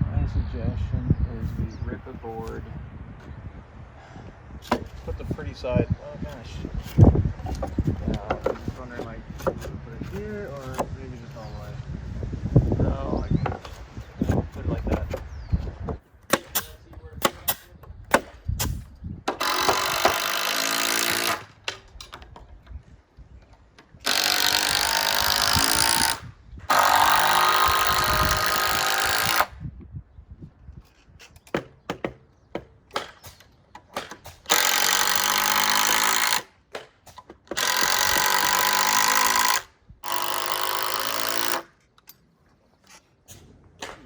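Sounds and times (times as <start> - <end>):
power tool running: 19.4 - 21.5, 24.0 - 29.5, 34.5 - 36.4, 37.6 - 41.7.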